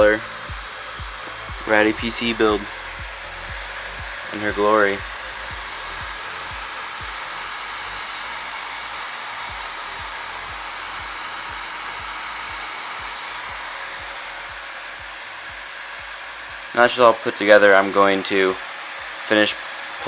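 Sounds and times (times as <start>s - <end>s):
faint low thumps: 0.0s - 7.3s
computer fans whooshing: 0.0s - 20.0s.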